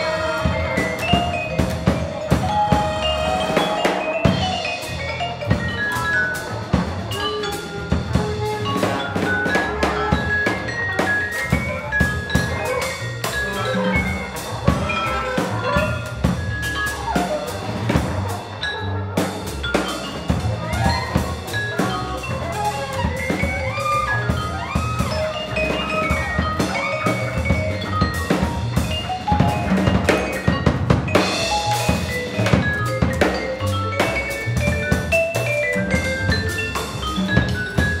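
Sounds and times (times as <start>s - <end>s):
small jazz group playing: 0.0s - 38.0s.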